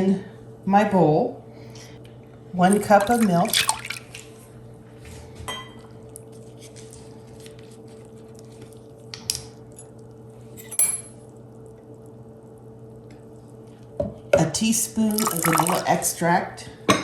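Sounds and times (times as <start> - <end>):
low steady hum: 1.4 - 4.9, 14.7 - 16.4.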